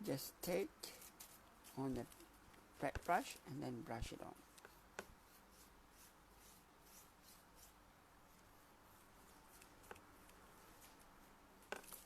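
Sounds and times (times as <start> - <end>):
paintbrush swishing on wood: 4.6 - 11.0.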